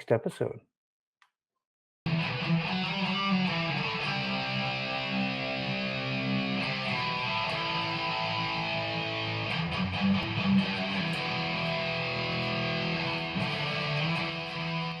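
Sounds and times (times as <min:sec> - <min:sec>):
strummed guitar music: 0:02.1 - 0:15.0.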